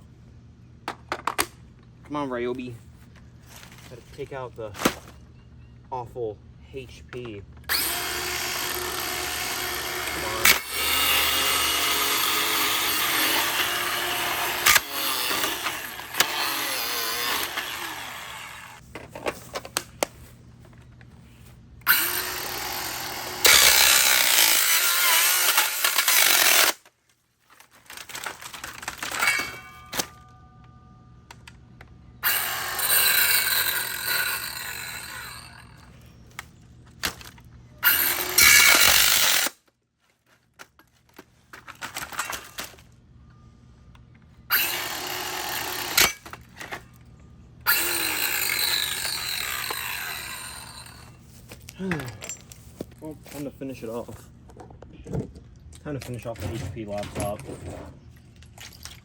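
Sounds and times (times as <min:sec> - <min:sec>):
circular saw cutting plastic and metal: 0:07.7 - 0:18.8, 0:21.9 - 0:26.8, 0:29.0 - 0:30.2, 0:32.2 - 0:35.9, 0:37.8 - 0:39.5, 0:44.5 - 0:46.4, 0:47.7 - 0:51.2, 0:56.2 - 0:58.1.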